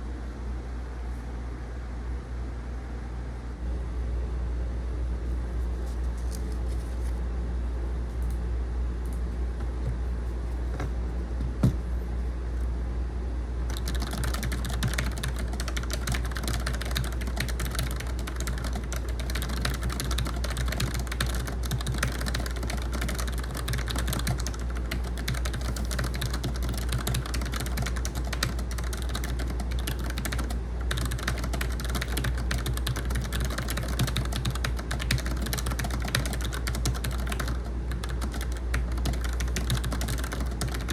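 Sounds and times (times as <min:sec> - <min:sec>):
air conditioner hum: 0:00.0 - 0:40.9
fast typing on keyboard: 0:13.7 - 0:40.9.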